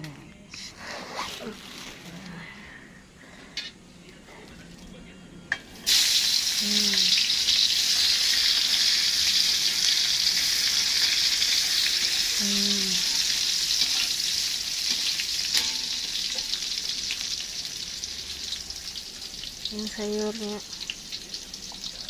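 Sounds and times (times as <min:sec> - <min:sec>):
paste sizzling in hot oil: 0:05.8 - 0:22.0.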